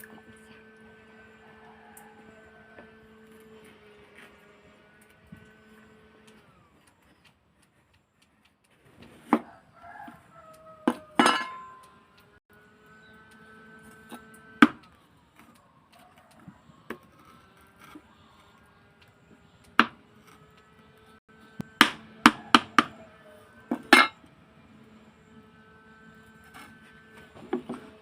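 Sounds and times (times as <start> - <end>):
rooster crowing: 0.6 - 3.7, 9.3 - 12.0, 15.4 - 18.6, 22.2 - 24.3.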